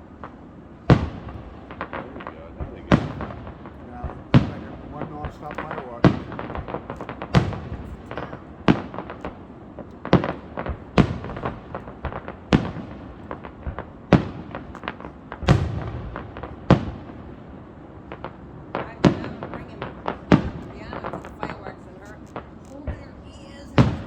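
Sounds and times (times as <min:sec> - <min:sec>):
firework pops and crackles: 0:00.0 - 0:24.0
firework shells booming: 0:00.0 - 0:24.0.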